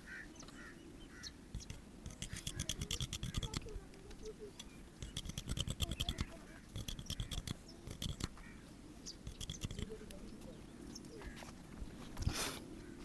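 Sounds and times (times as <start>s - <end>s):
scissors snipping: 1.6s - 3.8s, 4.6s - 8.4s, 9.3s - 10.2s.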